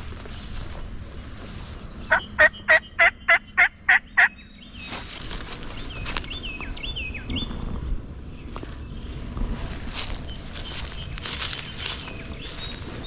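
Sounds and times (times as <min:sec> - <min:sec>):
turkey yelping: 0:02.1 - 0:04.3.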